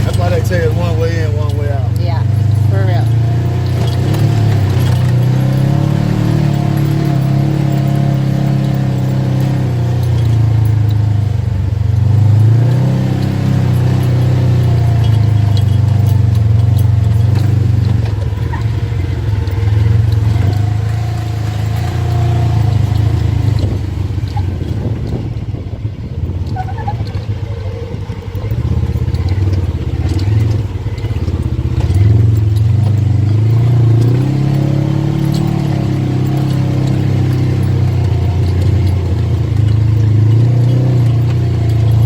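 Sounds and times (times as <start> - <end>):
atv engine revving: 0.0 - 42.0.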